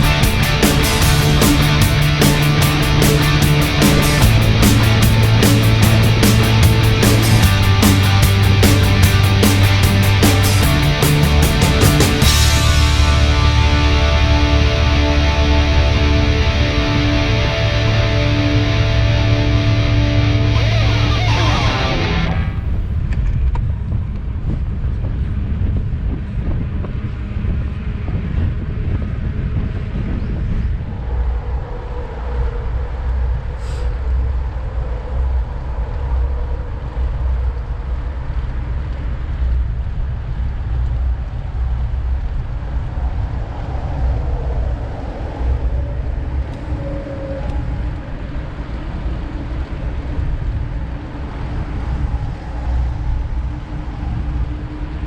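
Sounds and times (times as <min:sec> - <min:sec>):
wind buffeting microphone: 0:22.5 - 0:36.0, 0:39.2 - 0:55.0.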